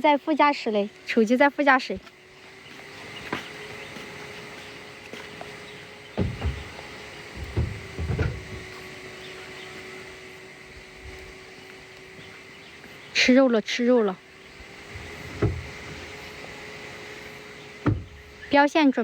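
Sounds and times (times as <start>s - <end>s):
dull clunks and knocks: 2.7s - 8.9s, 14.7s - 16.3s, 17.6s - 18.4s.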